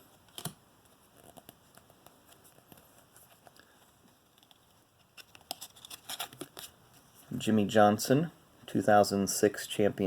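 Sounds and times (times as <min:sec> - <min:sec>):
trading cards flipped through: 0:04.3 - 0:06.8.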